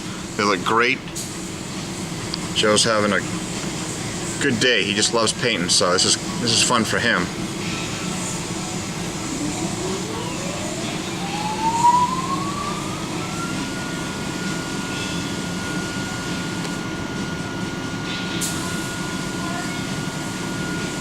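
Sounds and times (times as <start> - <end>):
motor whine: 7.9 - 18.0.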